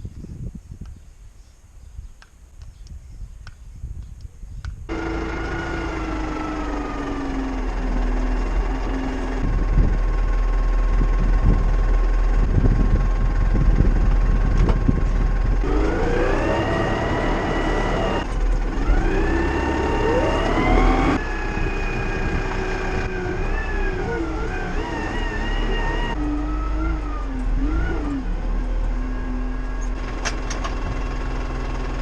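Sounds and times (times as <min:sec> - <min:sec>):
tractor engine running and revving: 0:04.9 - 0:32.0.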